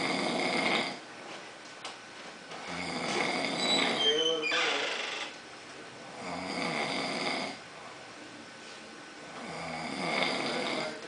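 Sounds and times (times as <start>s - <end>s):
man snoring: 0.0s - 1.0s, 2.6s - 4.0s, 6.2s - 7.6s, 9.4s - 11.0s.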